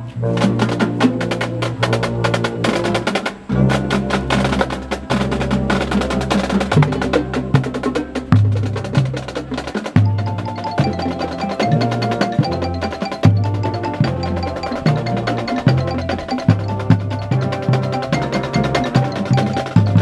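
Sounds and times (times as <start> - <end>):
drum strikes: 0.4 - 20.0.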